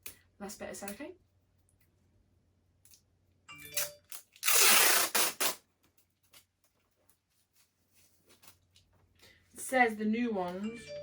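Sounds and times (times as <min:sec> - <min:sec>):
tape ripping off roll: 0:04.4 - 0:05.6.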